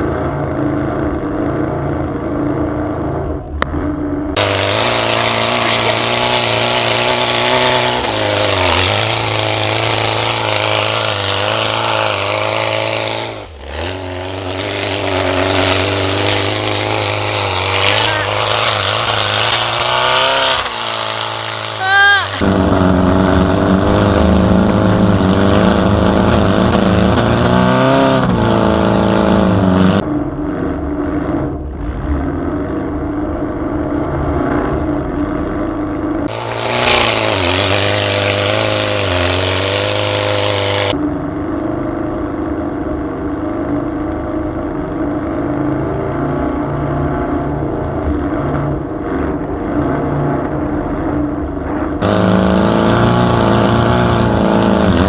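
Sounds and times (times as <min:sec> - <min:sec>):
car engine revving: 0:00.0 - 0:55.0
loud rushing noise: 0:22.2 - 0:27.4.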